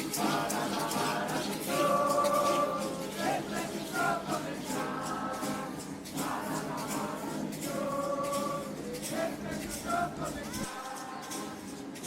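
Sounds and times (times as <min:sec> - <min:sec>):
choir singing long held notes: 0:00.0 - 0:12.0.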